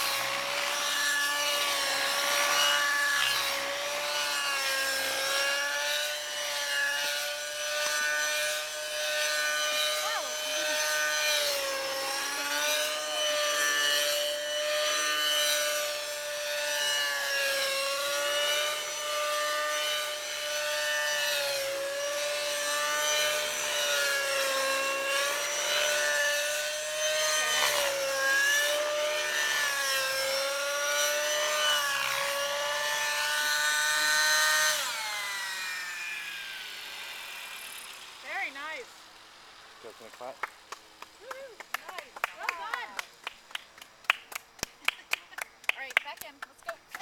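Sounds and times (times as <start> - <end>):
model helicopter engine whining: 0.0 - 43.0.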